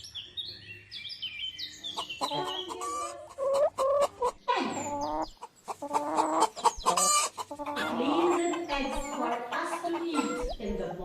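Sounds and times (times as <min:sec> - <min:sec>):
high falling bird chirps: 0:00.0 - 0:09.2
hen clucking: 0:01.8 - 0:11.0.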